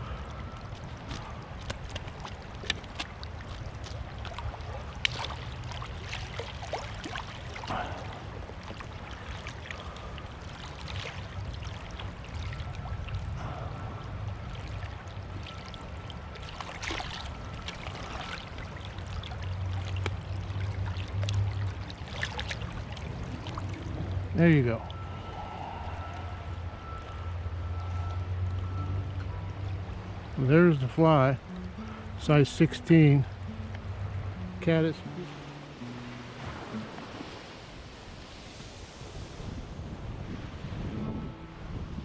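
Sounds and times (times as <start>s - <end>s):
low steady rumble: 0.0s - 42.0s
stream water flowing: 0.0s - 42.0s
small clicks and splashes: 0.5s - 13.2s, 14.5s - 23.8s.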